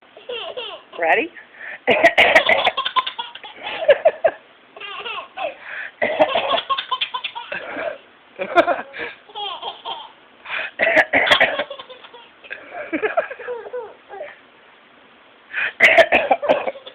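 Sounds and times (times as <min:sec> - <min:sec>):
baby laughing: 0:00.2 - 0:01.0, 0:01.9 - 0:04.0, 0:04.8 - 0:05.6, 0:06.2 - 0:10.2, 0:11.3 - 0:14.4, 0:16.4 - 0:16.9.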